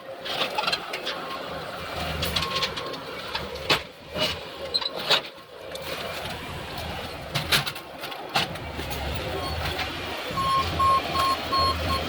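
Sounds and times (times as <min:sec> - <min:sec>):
heavy equipment engine running: 0:06.0 - 0:12.0.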